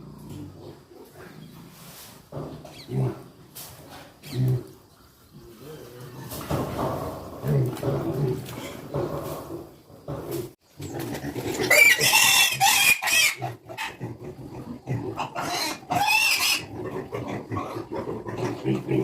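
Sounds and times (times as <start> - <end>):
pigs grunting: 0.0 - 19.0
pig squealing high-pitched: 11.0 - 19.0.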